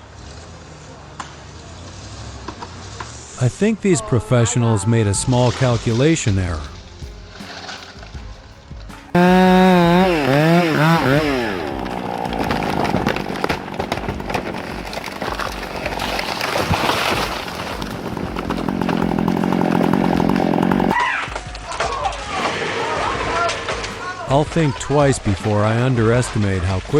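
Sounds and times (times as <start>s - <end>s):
chainsaw revving and sawing: 5.6s - 8.3s, 8.9s - 26.9s.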